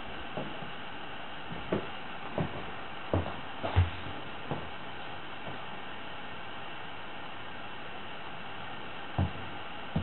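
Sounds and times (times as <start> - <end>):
footsteps on floor: 0.3 - 0.8, 1.5 - 5.7, 9.2 - 10.0.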